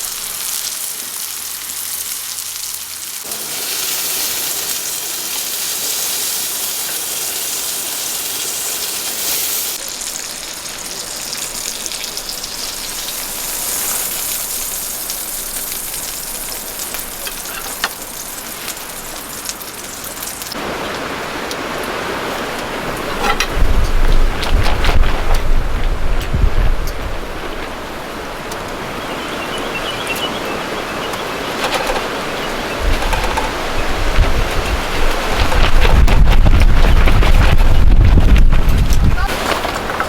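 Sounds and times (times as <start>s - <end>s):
steady hiss: 0.0s - 24.5s
wind buffeting microphone: 22.4s - 39.3s.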